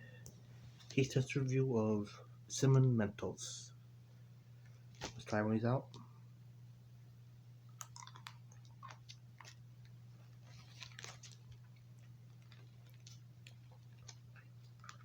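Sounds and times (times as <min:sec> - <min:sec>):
steady low hum: 0:00.0 - 0:15.0
candy being chewed: 0:07.7 - 0:15.0.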